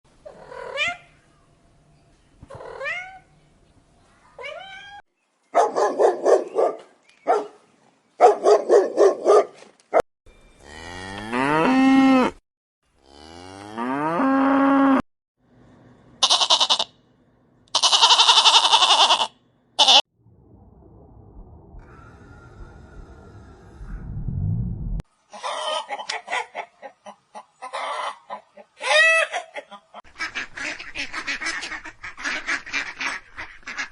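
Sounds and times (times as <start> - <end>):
dog barking: 5.5 - 7.6, 8.2 - 10.0
cow mooing: 10.6 - 12.4, 13.0 - 15.0
goat bleating: 16.2 - 16.9, 17.7 - 20.0.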